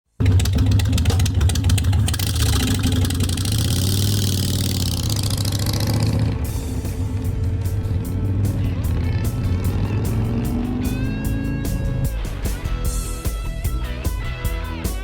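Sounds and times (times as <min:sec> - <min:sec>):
rapid ticking: 0:00.2 - 0:06.2
motorcycle engine idling: 0:00.2 - 0:13.5.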